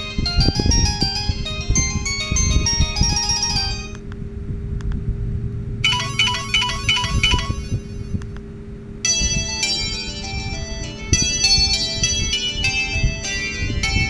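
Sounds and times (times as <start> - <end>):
phone ringtone melody: 0.0 - 4.0, 5.8 - 8.2, 9.0 - 14.0
repeated phone chime: 0.0 - 4.0, 5.8 - 8.2, 9.0 - 14.0
steady low hum: 0.0 - 14.0.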